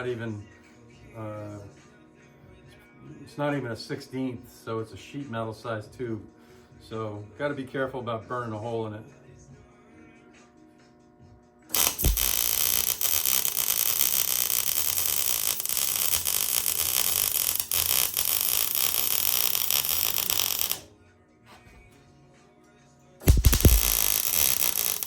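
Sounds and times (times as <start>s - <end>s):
welding arc hissing: 11.7s - 20.8s, 23.2s - 25.0s.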